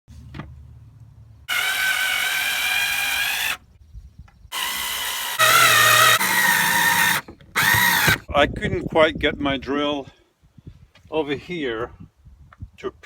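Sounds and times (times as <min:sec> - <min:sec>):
power drill motor whine: 0:01.5 - 0:03.6, 0:04.5 - 0:08.2.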